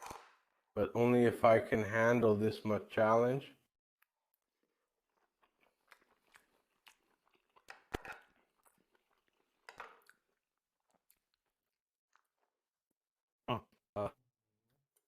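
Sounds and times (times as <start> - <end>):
person chewing: 4.0 - 12.6.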